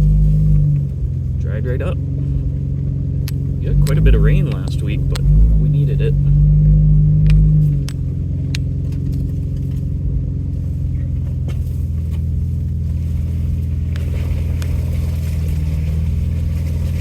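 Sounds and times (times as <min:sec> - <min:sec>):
truck engine rumbling: 0:00.0 - 0:17.0
light clicks and knocks from truck: 0:07.2 - 0:10.2, 0:10.9 - 0:15.2.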